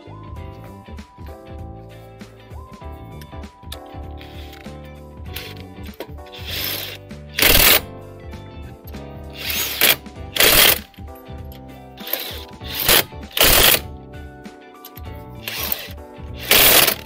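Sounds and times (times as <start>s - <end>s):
power tool spinning wheel nuts: 5.3s - 5.6s, 6.4s - 7.9s, 9.4s - 10.9s, 12.0s - 13.8s, 15.4s - 17.0s.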